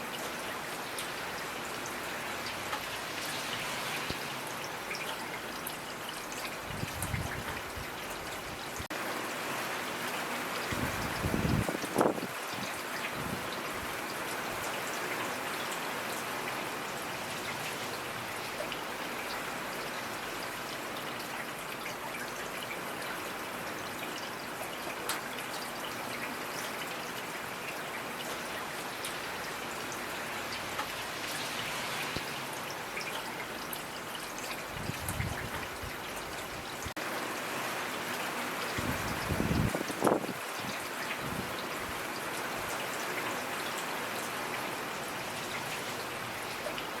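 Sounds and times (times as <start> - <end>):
rain drops pattering: 0.0 - 47.0.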